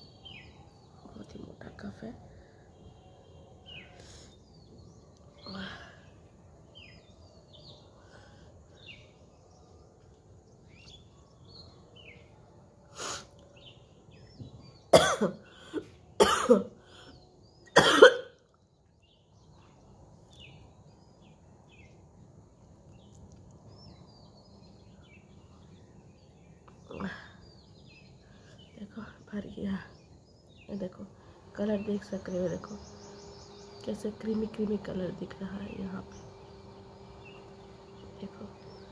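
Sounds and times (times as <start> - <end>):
woman coughing: 14.9 - 16.7, 17.8 - 18.4.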